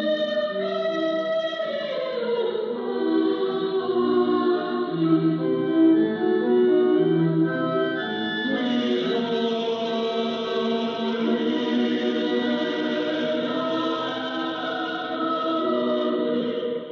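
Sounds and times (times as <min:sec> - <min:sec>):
choir singing over radio: 0:02.7 - 0:07.0, 0:07.7 - 0:16.9.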